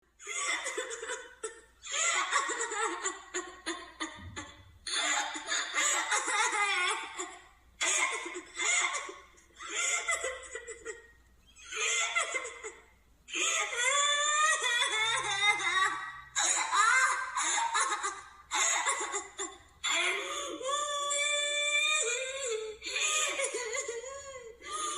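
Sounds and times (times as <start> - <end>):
cartoon high-pitched sobbing wails: 13.3 - 24.9.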